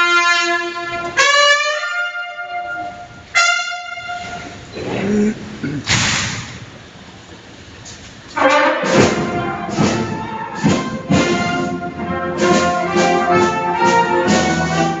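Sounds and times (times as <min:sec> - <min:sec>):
military brass band playing: 0:00.0 - 0:04.7, 0:08.3 - 0:15.0.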